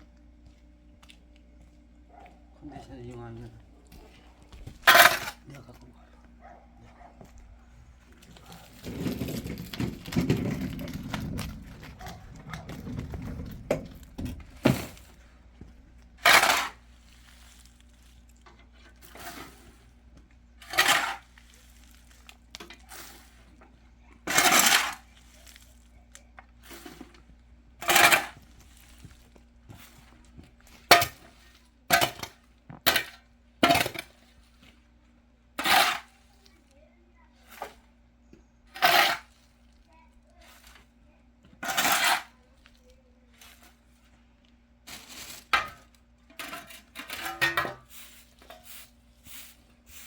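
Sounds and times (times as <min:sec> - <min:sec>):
firewood logs clattering: 0:08.1 - 0:15.2.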